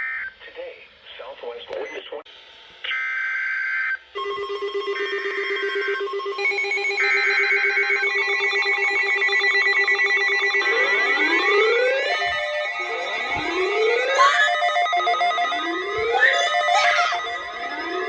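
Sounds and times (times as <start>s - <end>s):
electronic alarm tone: 3.0s - 18.0s
rapid pulsing beep: 4.2s - 18.0s
screeching digital data bursts: 6.4s - 18.0s
siren-like wail: 6.4s - 18.0s.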